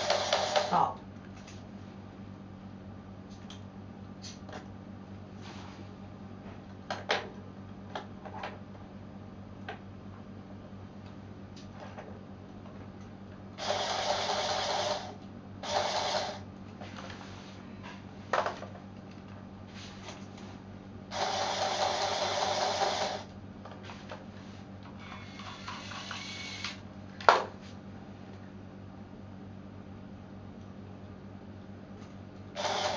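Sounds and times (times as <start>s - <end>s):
toy motor whirring: 0.0s - 0.8s, 13.6s - 16.4s, 21.1s - 23.3s, 25.0s - 26.8s, 32.6s - 32.9s.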